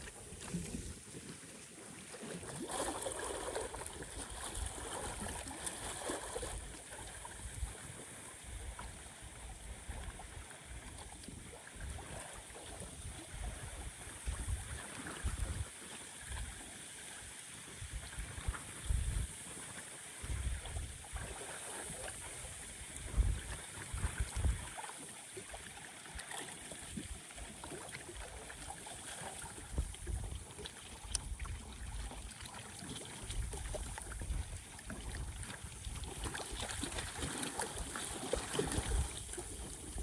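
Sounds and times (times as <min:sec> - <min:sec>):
rough lake water washing: 0:00.0 - 0:40.0
wind buffeting microphone: 0:17.9 - 0:19.3, 0:22.9 - 0:24.8.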